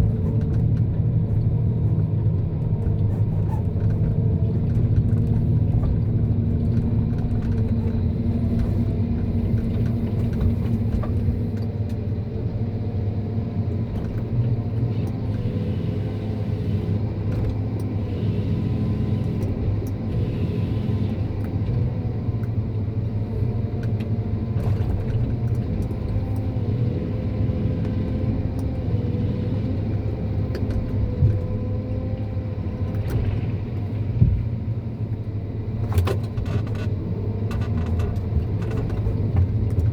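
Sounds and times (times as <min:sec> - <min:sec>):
harvester engine drone: 0:00.0 - 0:39.9
faint clicks and knocks: 0:35.9 - 0:39.9.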